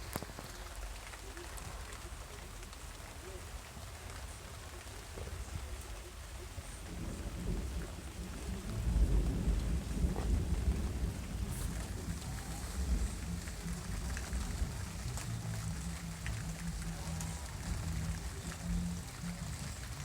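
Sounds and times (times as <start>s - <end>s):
steady rain falling: 0.0s - 20.0s
rolling thunder: 6.8s - 20.0s.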